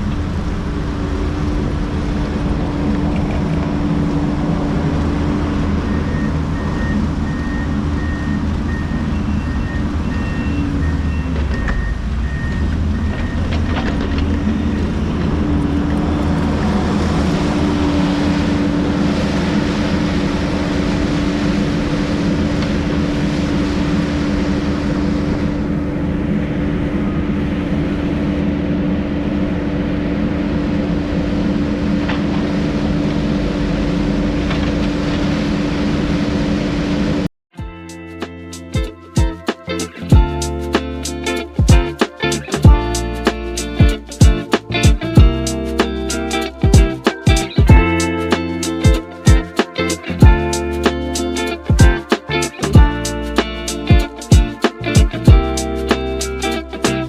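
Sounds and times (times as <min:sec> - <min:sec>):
diesel engine running: 0:00.0 - 0:37.3
high electronic beeping: 0:05.7 - 0:13.5.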